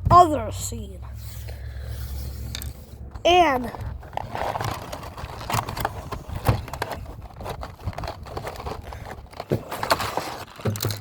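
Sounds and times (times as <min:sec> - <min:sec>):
wind rumbling on microphone: 0:01.9 - 0:09.4
plastic packaging clicks and crinkles: 0:03.8 - 0:11.0.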